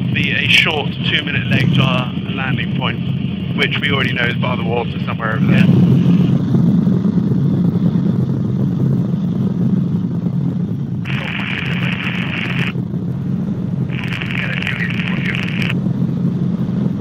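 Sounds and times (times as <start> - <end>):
helicopter engine and rotor drone: 0.0 - 17.0
thin radio hiss: 11.1 - 12.7, 13.9 - 15.8.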